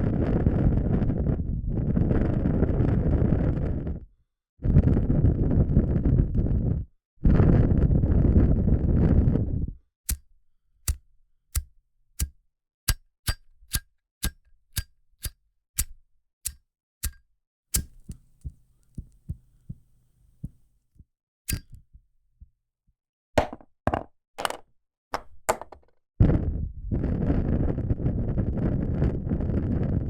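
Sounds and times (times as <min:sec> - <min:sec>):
lighter lid clicking: 0:12.9 - 0:17.2, 0:17.8 - 0:20.6, 0:21.5 - 0:21.8.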